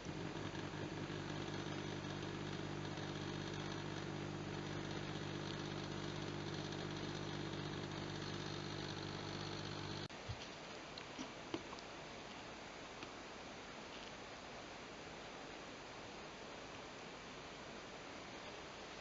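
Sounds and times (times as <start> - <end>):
refrigerator humming: 0.0 - 10.1.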